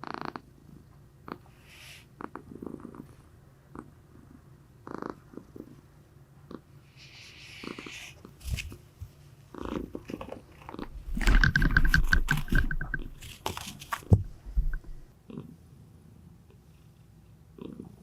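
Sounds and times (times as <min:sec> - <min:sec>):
rustling: 0:07.1 - 0:15.1.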